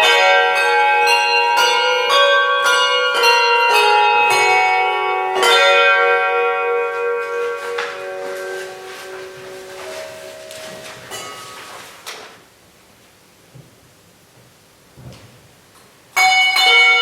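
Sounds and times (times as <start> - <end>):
handbells playing a carol: 0.0 - 11.8, 16.2 - 17.0.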